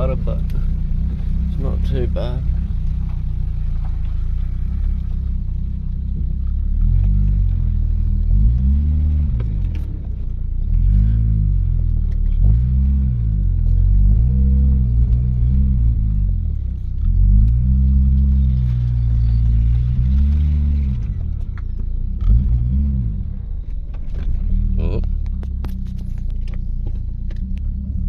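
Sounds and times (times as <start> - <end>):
engine revving and spluttering: 6.6 - 9.9, 10.6 - 21.3, 22.2 - 23.3.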